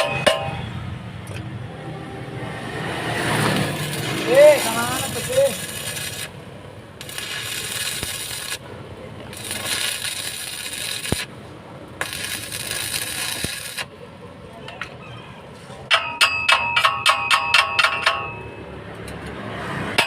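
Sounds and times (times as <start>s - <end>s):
ringing metal strikes: 0.0s - 0.7s, 15.9s - 18.7s.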